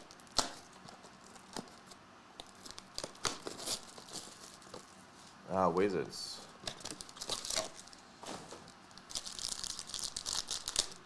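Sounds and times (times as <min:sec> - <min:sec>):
cards clicking and snapping: 0:00.0 - 0:03.7
foil wrappers crinkling: 0:00.0 - 0:05.4, 0:06.5 - 0:11.0.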